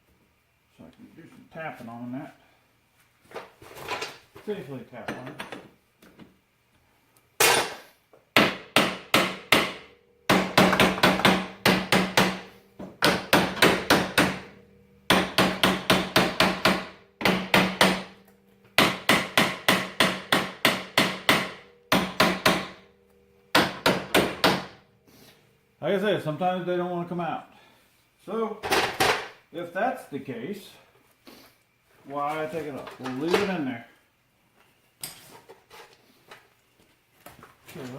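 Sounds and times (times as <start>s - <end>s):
hammer striking metal: 7.4s - 24.9s.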